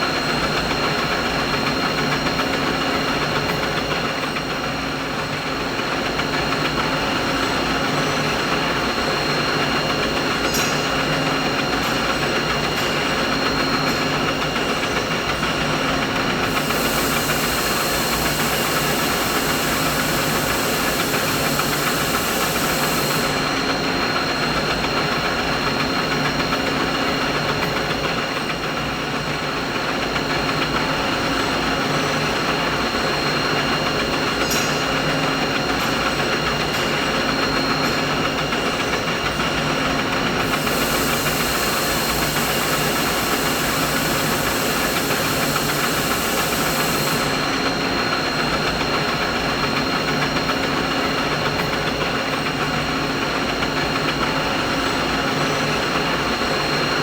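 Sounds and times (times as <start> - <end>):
machine hum whirring: 0.0 - 57.0
high hiss: 16.4 - 23.5, 40.5 - 47.6.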